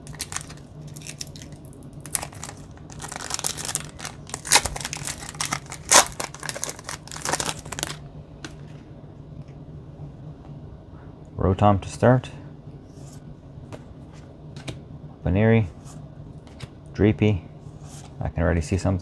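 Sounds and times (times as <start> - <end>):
foil pack crinkling and tearing: 0.0 - 8.0.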